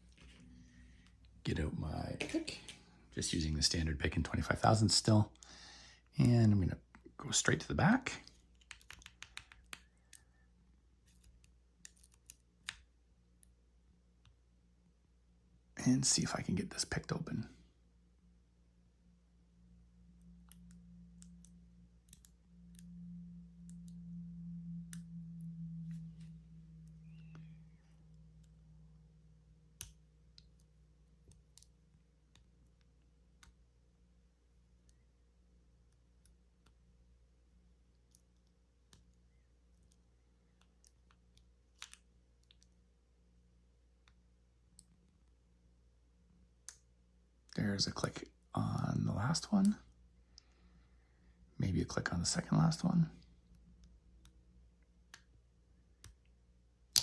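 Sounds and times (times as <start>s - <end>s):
low steady hum: 0.0s - 57.0s.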